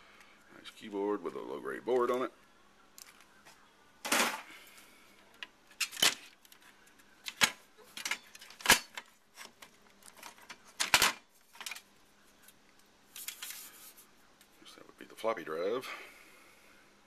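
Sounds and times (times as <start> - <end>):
computer parts knocking and clattering: 7.3 - 11.8.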